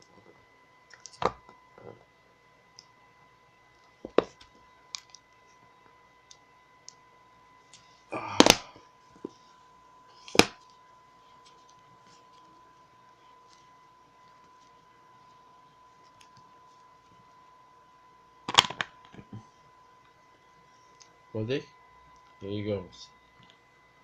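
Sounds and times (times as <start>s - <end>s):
faint steady whine: 0.0s - 24.0s
sharp crack: 8.2s - 8.7s.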